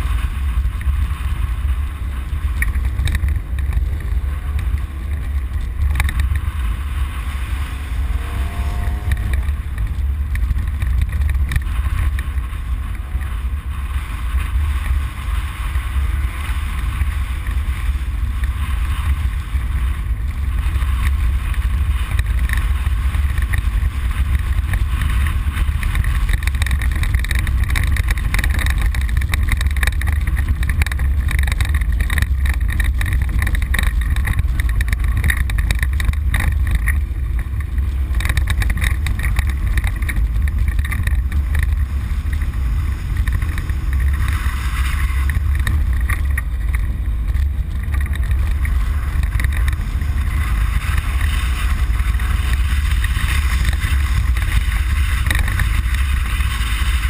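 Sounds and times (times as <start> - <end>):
deep engine rumble: 0.0 - 57.0
wind and road noise: 0.0 - 57.0
knocks and rattles: 21.0 - 57.0.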